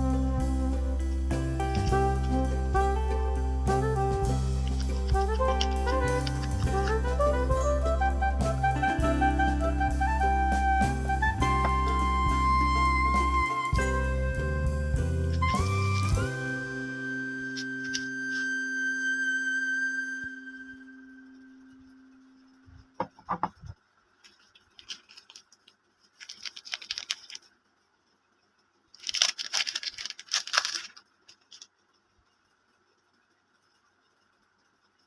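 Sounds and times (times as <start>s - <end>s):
held musical note: 0.0s - 22.9s
packaging torn and crinkled: 26.2s - 27.5s, 29.0s - 31.7s.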